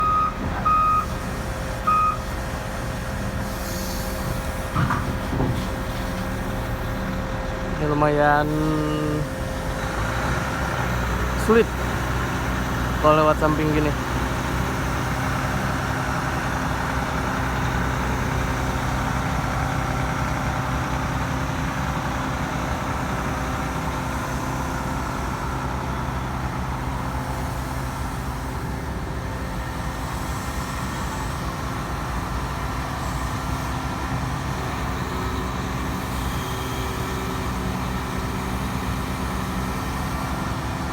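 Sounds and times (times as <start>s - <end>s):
heavy diesel engine running: 0.0s - 40.9s.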